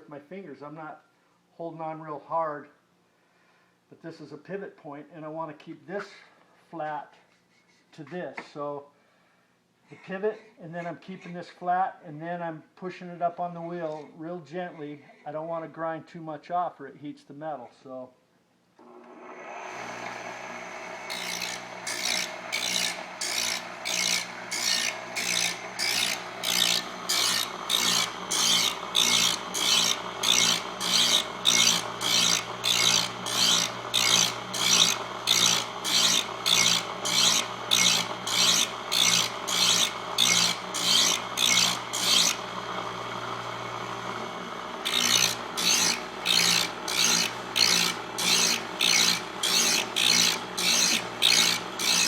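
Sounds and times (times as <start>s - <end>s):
grinder motor hum: 18.8s - 52.0s
blade rasping on grinding wheel: 19.3s - 52.0s.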